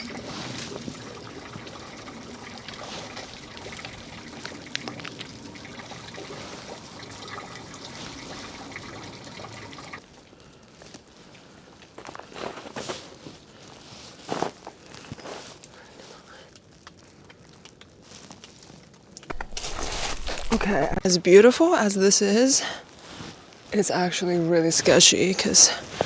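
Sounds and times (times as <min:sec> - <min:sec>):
meltwater trickling and dripping: 0:00.0 - 0:11.3.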